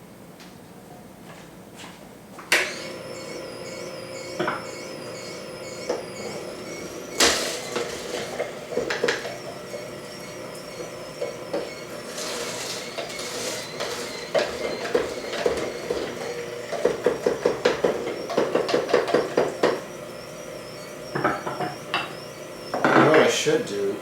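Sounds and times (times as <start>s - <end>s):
utensils and dishes clattering: 7.2s - 19.8s.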